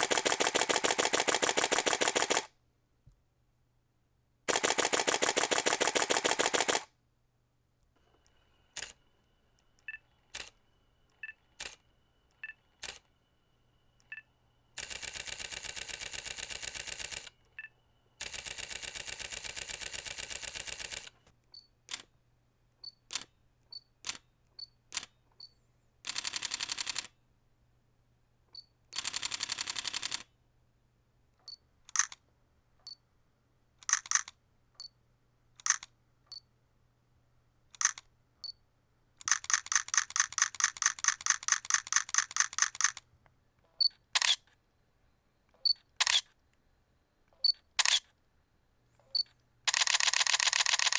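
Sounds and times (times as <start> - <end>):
camera shutter clicks: 0.0 - 2.5, 4.5 - 6.9, 31.9 - 32.2, 33.8 - 34.3, 35.6 - 35.9, 37.8 - 38.1, 39.2 - 43.0, 44.2 - 44.4, 46.0 - 46.3, 47.8 - 48.0, 49.7 - 50.9
rapid camera shutter bursts: 0.0 - 2.5, 4.5 - 6.9, 14.8 - 17.3, 18.2 - 21.1, 26.1 - 27.1, 29.0 - 30.2, 31.9 - 32.2, 33.8 - 34.3, 35.6 - 35.9, 37.8 - 38.0, 39.2 - 43.0, 44.2 - 44.4, 46.0 - 46.3, 47.8 - 48.0, 49.7 - 50.9.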